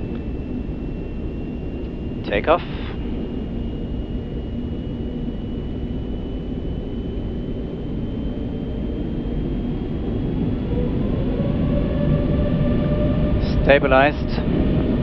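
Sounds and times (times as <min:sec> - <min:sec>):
high engine whine rising: 0:00.0 - 0:15.0
jet engines spooling up: 0:00.0 - 0:15.0.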